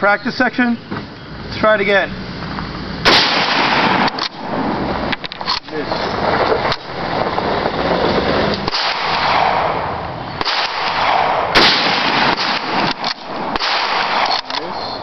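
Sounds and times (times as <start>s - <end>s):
loud rushing noise: 1.8s - 15.0s
rifle shot: 3.0s - 5.8s, 8.6s - 15.0s
faint cracks: 12.3s - 14.7s.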